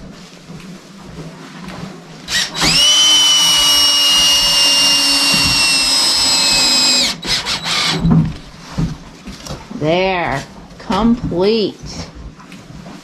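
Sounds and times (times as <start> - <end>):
power drill driving screw: 2.3 - 8.1.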